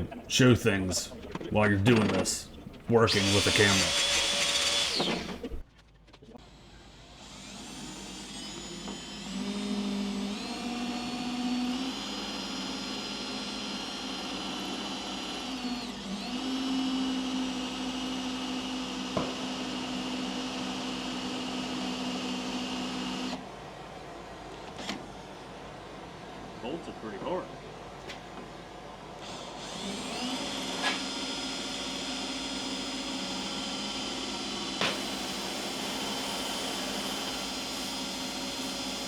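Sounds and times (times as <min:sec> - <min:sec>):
electric drill whining: 0:01.3 - 0:05.6, 0:06.5 - 0:23.5, 0:29.2 - 0:39.0.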